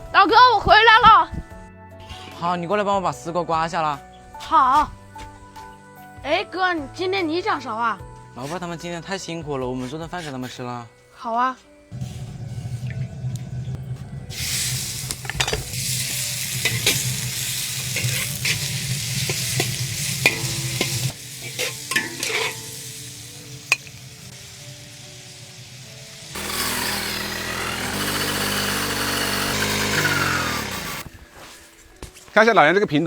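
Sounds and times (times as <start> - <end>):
food sizzling in a pan: 14.3 - 28.9
spatula scraping metal pan: 15.2 - 24.0.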